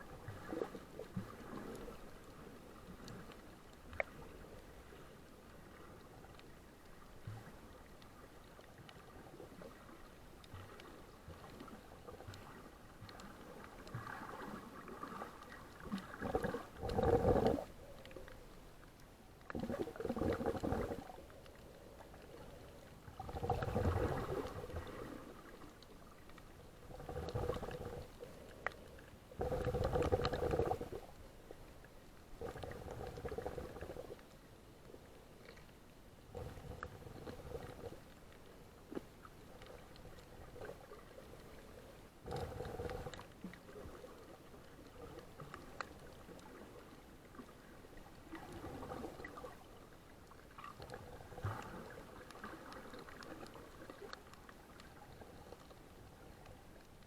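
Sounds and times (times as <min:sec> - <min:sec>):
water gurgling bursts: 0:14.0 - 0:17.7, 0:19.5 - 0:21.2, 0:23.1 - 0:25.4, 0:26.8 - 0:28.1, 0:29.3 - 0:31.1, 0:42.2 - 0:43.8.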